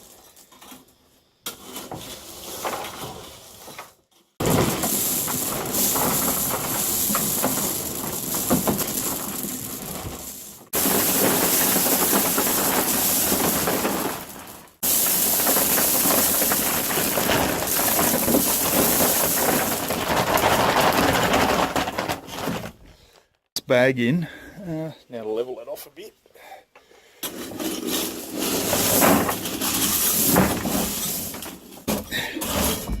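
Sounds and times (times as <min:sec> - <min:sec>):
gravel pouring: 0:00.0 - 0:22.6, 0:27.2 - 0:33.0.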